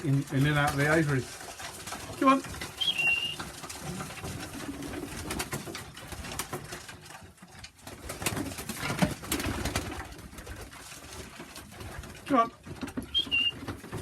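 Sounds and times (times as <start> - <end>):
pigeons cooing: 0.7 - 5.6, 12.8 - 14.0.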